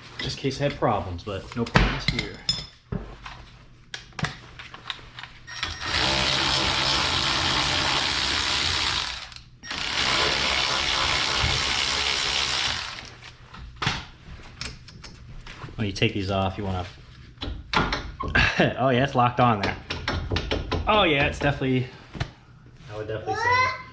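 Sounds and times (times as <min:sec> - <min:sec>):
power tool spinning bolts: 0:05.5 - 0:13.3.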